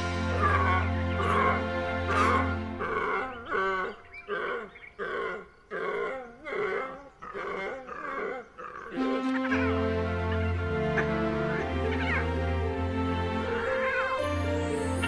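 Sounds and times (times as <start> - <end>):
music: 0.0 - 4.3, 9.0 - 15.0.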